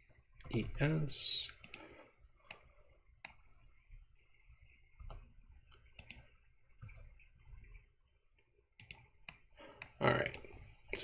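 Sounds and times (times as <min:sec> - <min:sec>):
mouse and keyboard clicks: 0:01.6 - 0:01.8, 0:05.8 - 0:06.3, 0:08.8 - 0:10.6.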